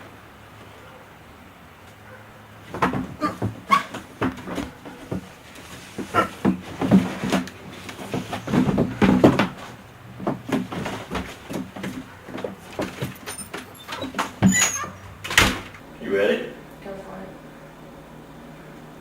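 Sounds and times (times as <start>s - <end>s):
objects knocking and clunking: 1.9s - 15.8s.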